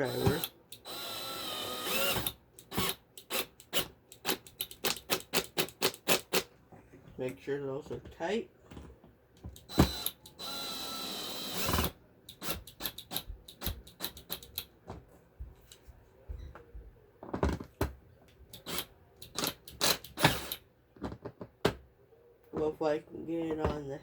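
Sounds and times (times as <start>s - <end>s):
cordless drill driving screw: 0.0s - 6.5s, 9.6s - 14.6s, 18.5s - 20.6s
clicks and knocks handling: 6.7s - 9.7s.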